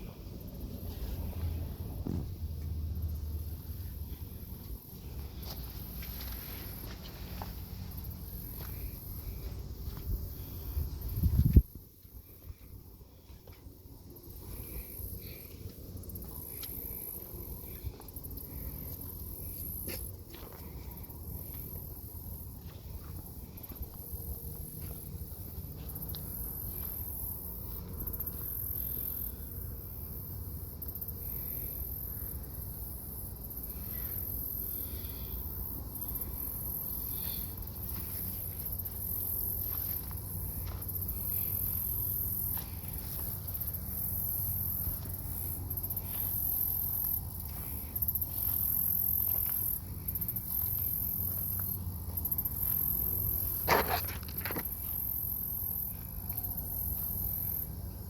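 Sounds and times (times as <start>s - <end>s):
insects trilling: 0.0s - 58.0s.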